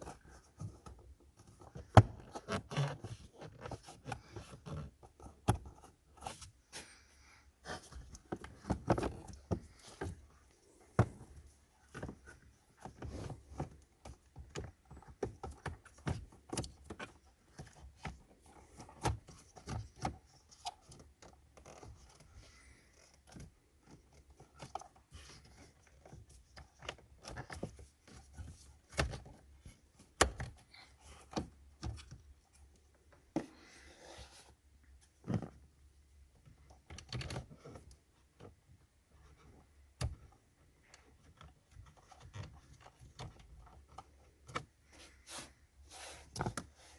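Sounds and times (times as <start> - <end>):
hands handling plastic parts: 7.6 - 33.6.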